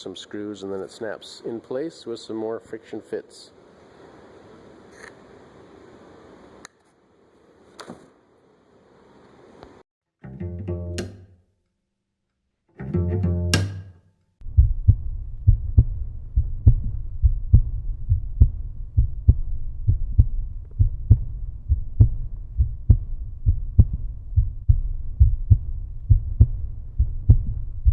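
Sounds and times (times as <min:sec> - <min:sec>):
bass-heavy beat: 0:10.3 - 0:11.2, 0:12.8 - 0:27.9.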